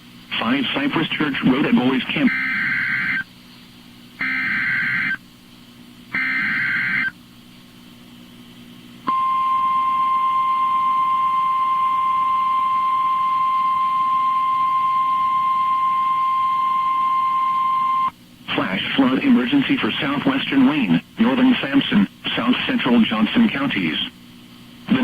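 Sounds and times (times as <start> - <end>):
steady alarm tone: 1.7 - 3.2, 4.2 - 5.2, 6.1 - 7.2, 9.1 - 18.1.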